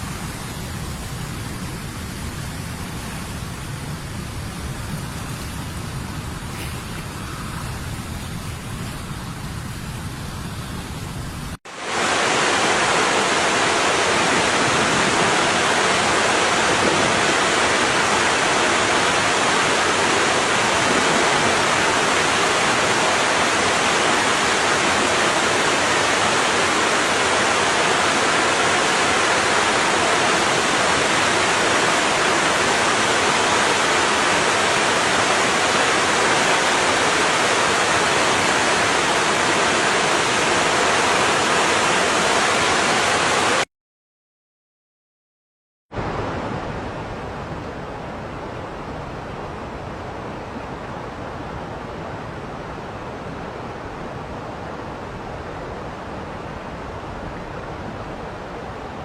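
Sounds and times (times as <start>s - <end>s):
waterfall rushing: 0.0s - 43.7s.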